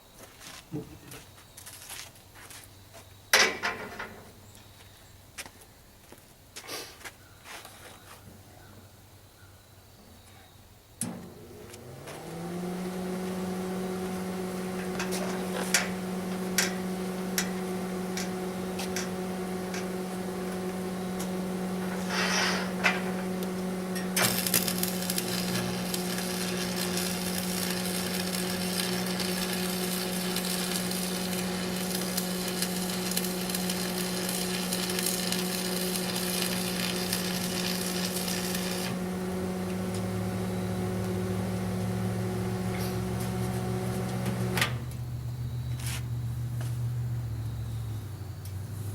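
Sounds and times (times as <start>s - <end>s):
motor hum: 11.0s - 48.9s
crackling hiss of welding arc: 12.8s - 45.0s.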